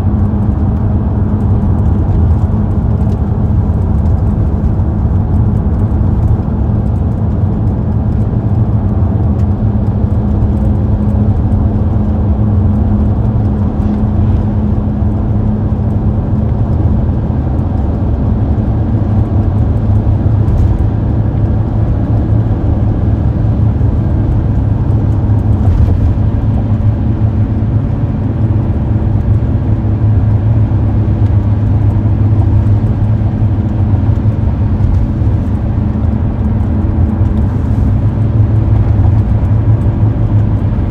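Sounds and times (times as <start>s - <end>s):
car engine and road noise drone: 0.0s - 40.9s.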